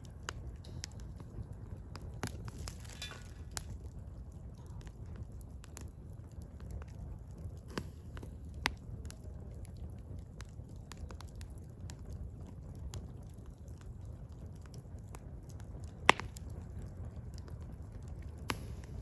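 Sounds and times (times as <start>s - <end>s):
firewood crackling: 0.0s - 19.0s
low rumble of flames: 0.0s - 19.0s
sharp pops: 18.5s - 19.0s.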